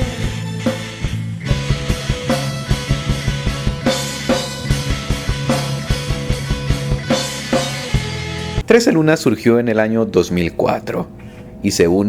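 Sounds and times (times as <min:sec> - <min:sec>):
drums beating: 0:00.0 - 0:08.7
rock music: 0:00.0 - 0:08.7
held bass notes: 0:00.0 - 0:11.7.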